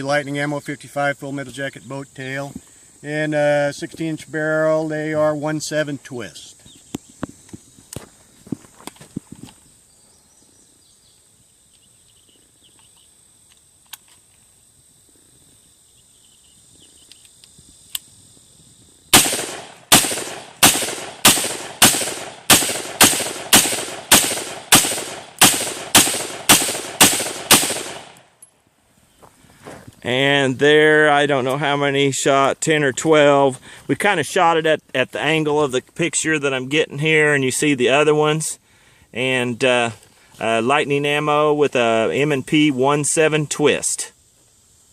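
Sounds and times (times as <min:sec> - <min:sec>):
rifle shots: 0:19.1 - 0:28.3.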